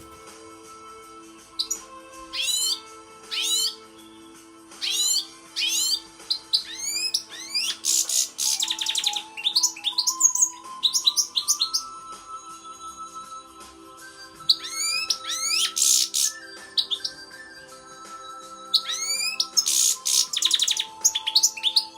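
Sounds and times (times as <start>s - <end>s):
goldfinch singing: 1.5s - 4.1s, 4.7s - 12.0s, 14.3s - 21.9s.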